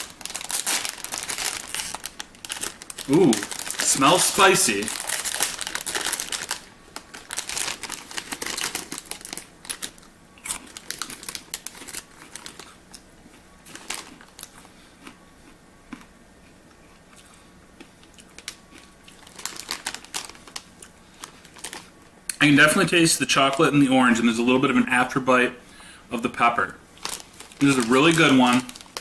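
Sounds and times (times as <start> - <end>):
popcorn bag crinkling: 0.0 - 12.8, 13.6 - 14.8, 18.2 - 22.0, 27.0 - 29.0.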